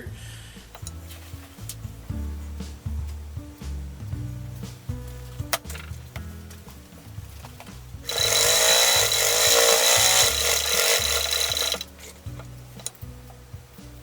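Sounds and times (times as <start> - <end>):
sewing machine running fast: 8.1 - 11.9.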